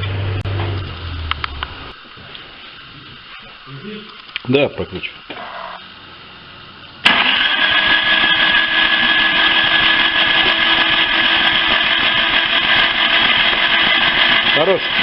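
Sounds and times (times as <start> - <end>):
car engine cranking on starter: 7.0 - 8.8.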